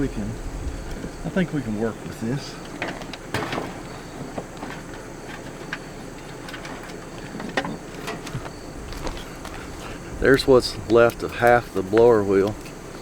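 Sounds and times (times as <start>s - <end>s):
parts clicking and rattling: 2.1s - 13.0s
knocks: 2.8s - 4.5s.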